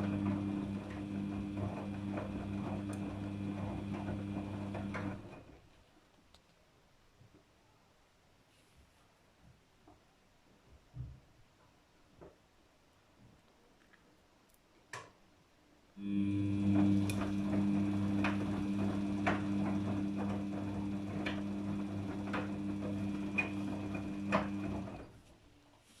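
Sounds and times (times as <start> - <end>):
washing machine drum motor humming: 0.0 - 5.4, 16.0 - 25.2.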